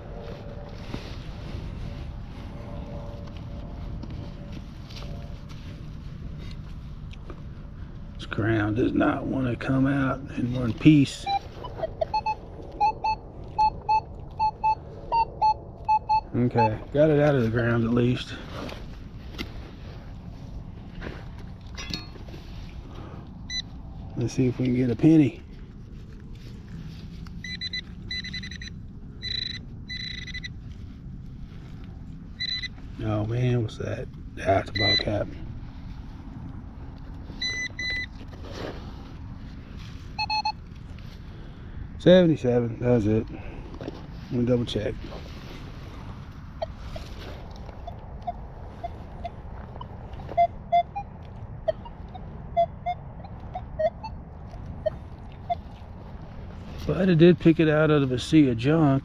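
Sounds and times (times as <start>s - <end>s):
metal detector beeping: 11.0s - 16.8s, 23.5s - 23.7s, 27.4s - 30.6s, 32.4s - 33.2s, 34.4s - 35.4s, 37.3s - 38.7s, 40.1s - 40.7s, 46.5s - 56.0s.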